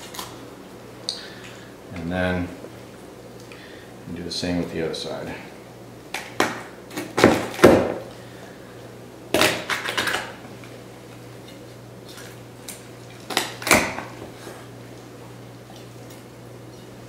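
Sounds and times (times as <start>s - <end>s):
knife crunching through chicken bones: 0.0s - 0.4s, 9.3s - 10.4s, 11.5s - 14.8s.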